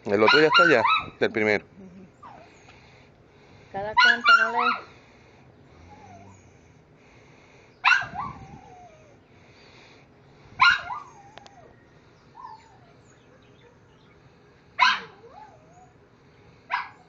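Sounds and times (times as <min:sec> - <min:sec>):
animal cries with falling whine: 0:07.8 - 0:09.7, 0:10.6 - 0:14.1.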